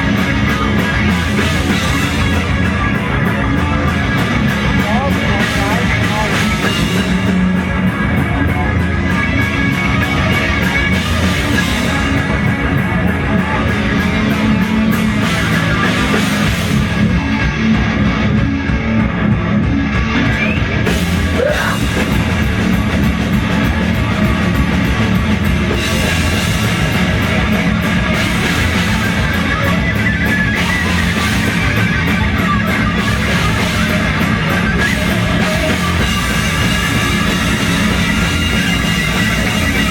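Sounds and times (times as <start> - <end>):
cymbals keeping a beat: 0.0 - 18.4, 20.2 - 39.9
drum kit: 0.0 - 39.9
electric guitar: 0.0 - 39.9.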